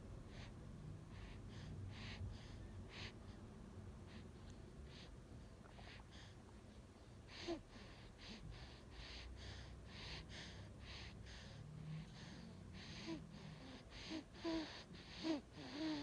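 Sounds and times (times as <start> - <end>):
baby breathing quickly: 7.3 - 16.0.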